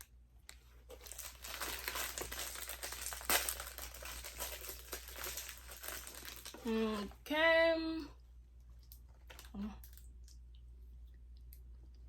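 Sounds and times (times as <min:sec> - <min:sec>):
snack packaging crinkling: 0:00.0 - 0:06.9, 0:08.7 - 0:10.6
sharp crackle: 0:01.0 - 0:06.7.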